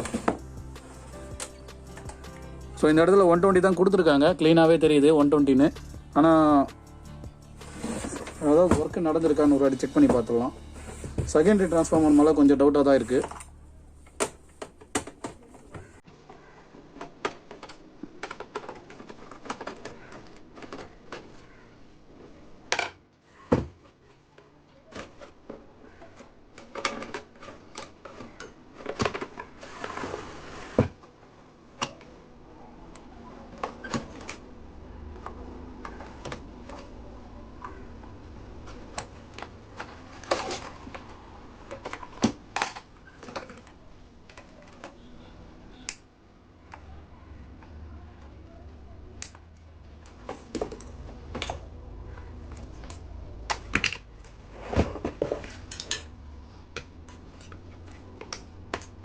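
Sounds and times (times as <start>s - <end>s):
hands and tools handling parts: 0.0s - 16.0s, 24.9s - 32.2s, 32.9s - 45.1s, 47.5s - 59.0s.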